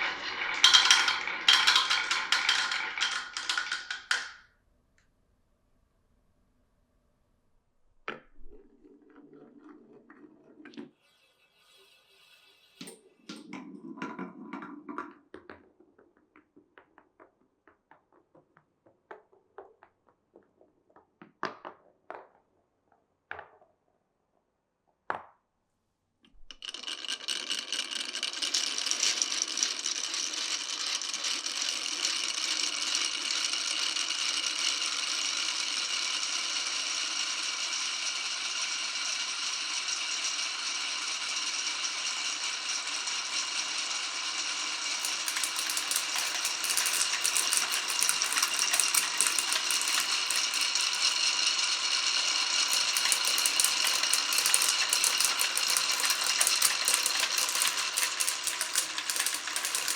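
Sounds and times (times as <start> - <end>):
loud rattling clatter: 0.0 - 4.4, 45.0 - 51.4, 52.7 - 59.9
marbles knocking wooden pieces: 0.0 - 4.4, 45.0 - 59.9
marbles rolling on wooden track: 0.0 - 4.4, 8.1 - 20.0, 26.4 - 59.9.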